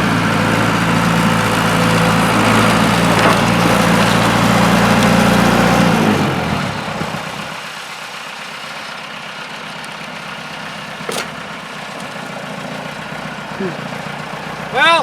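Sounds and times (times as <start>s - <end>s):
heavy vehicle engine rumbling: 0.0s - 15.0s
single knock: 11.1s - 11.4s.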